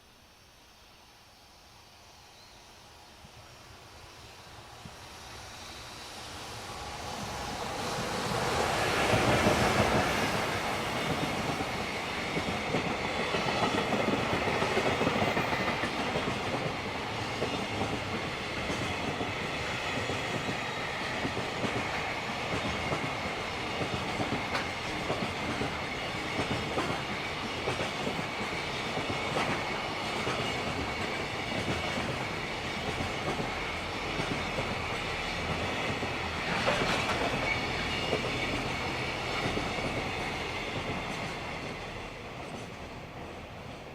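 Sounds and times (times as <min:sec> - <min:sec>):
freight train passing: 0:00.0 - 0:43.9
high wheel squeal: 0:36.3 - 0:39.5.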